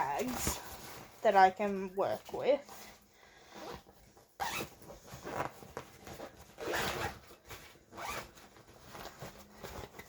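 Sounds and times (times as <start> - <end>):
fabric bags rustling: 0.0 - 10.0
zipper zipping: 3.5 - 8.4.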